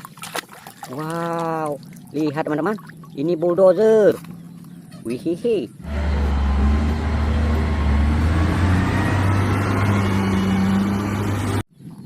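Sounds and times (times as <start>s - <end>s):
heavy vehicle engine humming: 5.7s - 11.6s.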